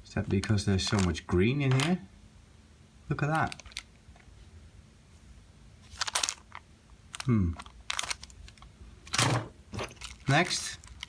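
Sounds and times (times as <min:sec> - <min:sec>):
plastic packaging crinkling: 0:03.3 - 0:04.0, 0:05.8 - 0:11.0.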